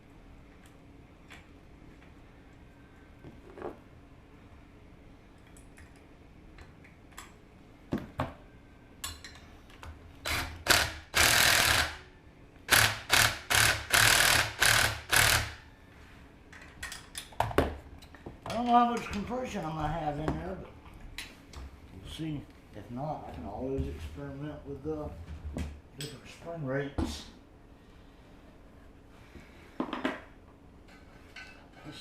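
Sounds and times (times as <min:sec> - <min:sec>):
power tool short bursts: 0:10.3 - 0:12.0, 0:12.7 - 0:15.6.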